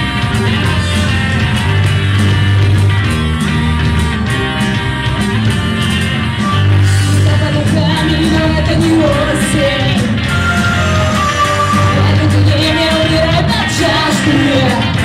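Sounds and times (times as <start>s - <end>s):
rock band playing: 0.0s - 15.0s
person singing: 6.9s - 15.0s.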